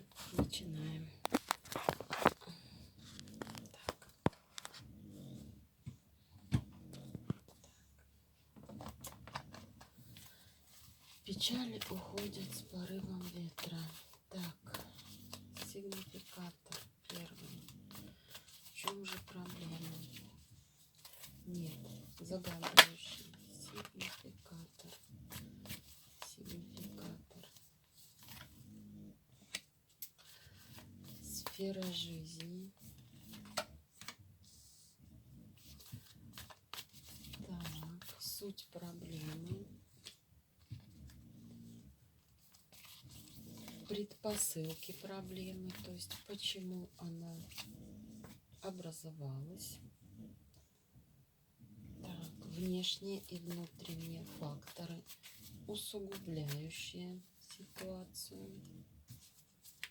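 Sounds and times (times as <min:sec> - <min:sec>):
tarot cards being laid out: 0:00.0 - 0:04.8, 0:08.6 - 0:20.2, 0:21.0 - 0:28.5, 0:35.8 - 0:40.2, 0:52.2 - 0:58.0, 0:59.1 - 0:59.9.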